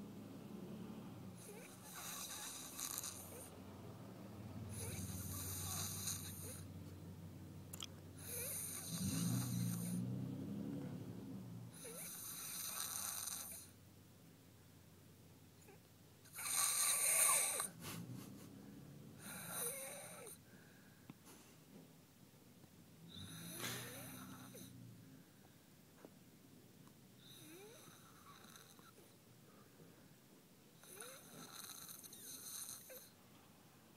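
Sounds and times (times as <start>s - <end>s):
person snoring: 1.4s - 3.5s, 4.7s - 6.6s, 7.8s - 10.1s, 11.7s - 13.7s, 16.3s - 17.8s, 19.2s - 20.4s, 23.1s - 24.7s, 27.2s - 29.0s.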